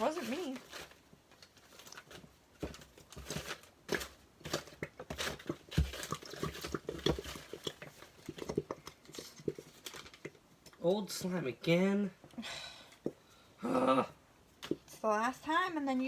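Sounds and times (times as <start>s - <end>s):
small objects clicking and rustling: 0.0s - 10.9s.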